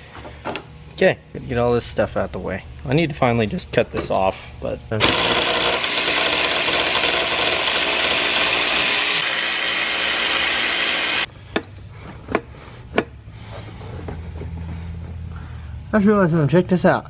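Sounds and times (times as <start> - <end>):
power tool running: 4.9 - 11.3.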